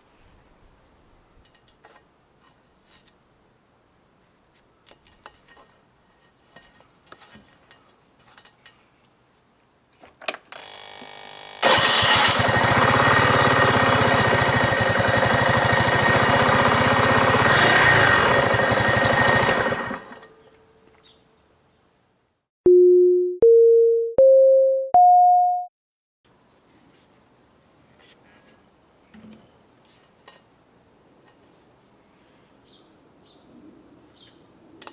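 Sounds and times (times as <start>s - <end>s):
scooter engine running: 10.6s - 20.4s
short electronic beeps: 22.7s - 25.7s.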